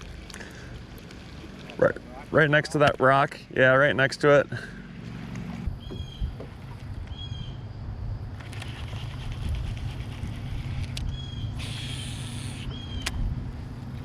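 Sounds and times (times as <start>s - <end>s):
boat motor humming: 0.0s - 14.0s
hiss: 11.6s - 12.7s.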